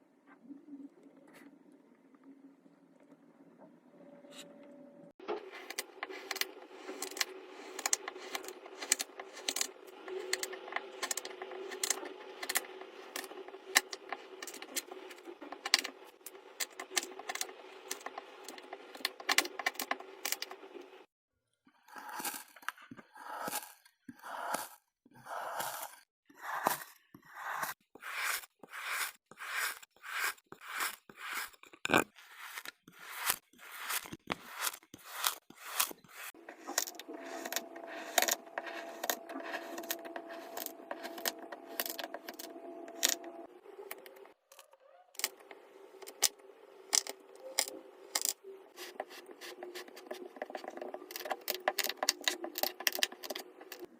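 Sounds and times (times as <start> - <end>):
steady hum: 36.4 - 44.3.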